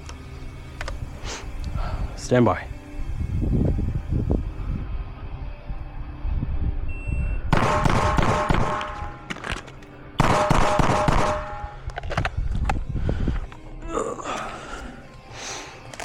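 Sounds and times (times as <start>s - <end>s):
rapid gunshots: 7.6s - 9.0s, 10.2s - 11.6s.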